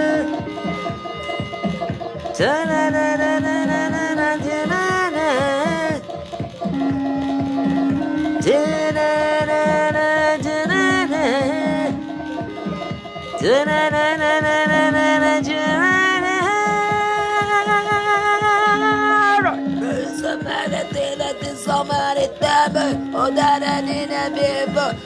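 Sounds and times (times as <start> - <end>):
electronic backing with drum beat: 0.0 - 25.0
wordless singing: 2.3 - 6.9, 7.8 - 25.0.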